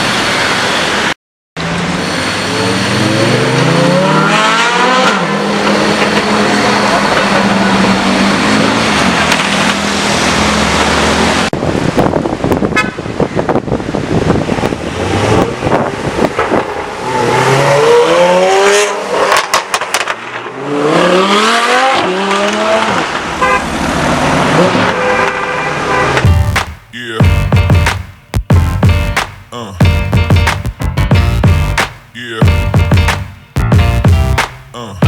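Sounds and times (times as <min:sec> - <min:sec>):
car engine revving: 0:01.6 - 0:11.5, 0:14.7 - 0:25.1.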